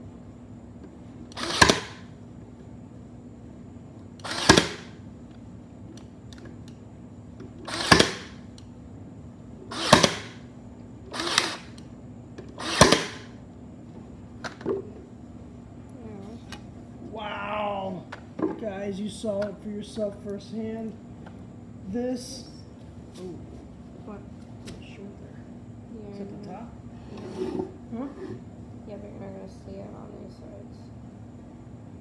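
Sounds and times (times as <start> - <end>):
nail gun shots into wood: 1.4 - 2.1, 4.2 - 5.0, 7.6 - 8.4, 9.7 - 10.4, 12.6 - 13.3.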